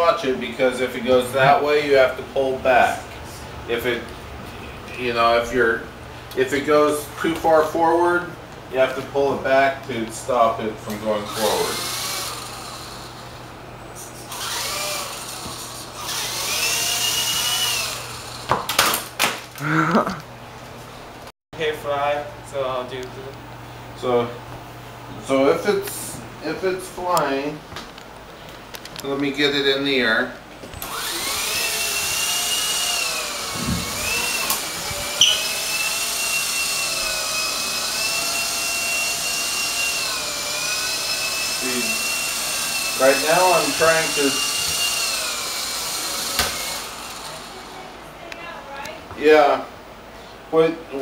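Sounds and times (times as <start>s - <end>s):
toy helicopter motor whining: 11.3s - 13.3s, 14.0s - 18.5s, 30.8s - 47.7s.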